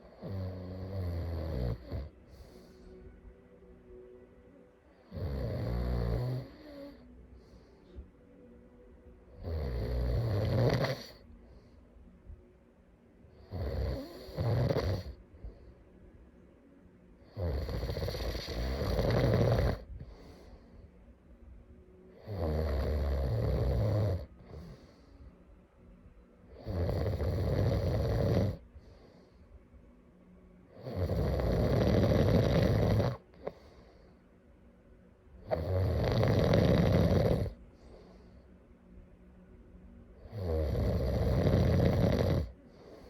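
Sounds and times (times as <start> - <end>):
person snoring: 0.0 - 2.6, 5.0 - 7.1, 9.4 - 11.2, 13.4 - 15.2, 17.3 - 20.2, 22.2 - 24.8, 26.5 - 28.6, 30.8 - 33.6, 35.5 - 37.6, 40.2 - 43.0.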